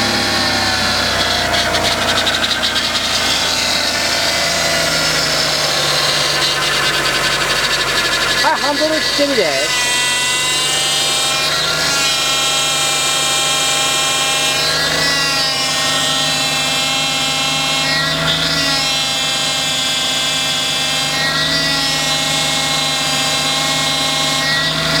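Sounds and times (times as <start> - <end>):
car engine running: 0.0 - 10.3
power steering pump whining: 0.0 - 19.0.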